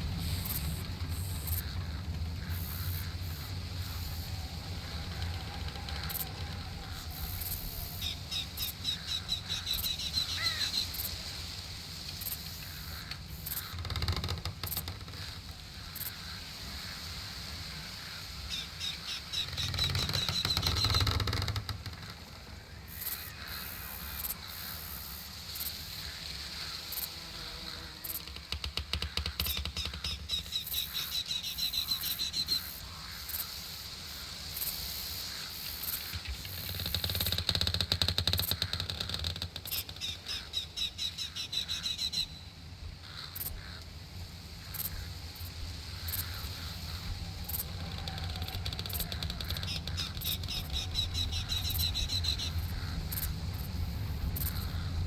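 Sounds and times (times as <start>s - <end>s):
songbird trilling: 0.0s - 11.2s, 18.2s - 24.4s, 27.6s - 33.5s, 38.2s - 42.5s, 46.1s - 55.0s
low steady rumble: 0.0s - 20.8s, 39.5s - 55.0s.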